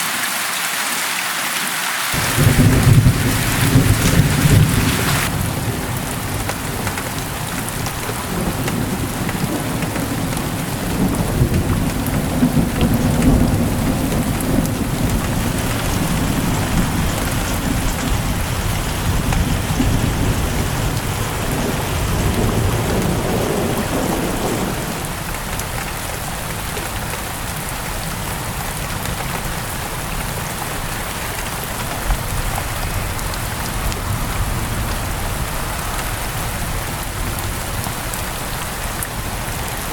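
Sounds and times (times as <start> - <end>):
steady rain: 0.0 - 39.9
rolling thunder: 2.2 - 25.3.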